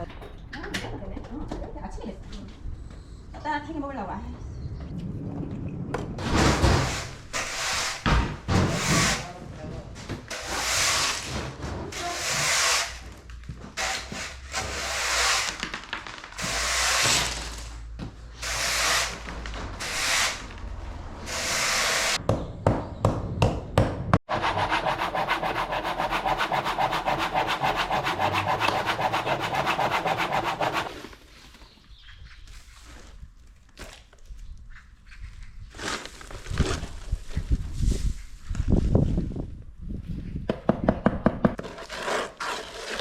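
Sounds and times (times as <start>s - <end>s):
scraping on a wall: 6.2s - 17.7s.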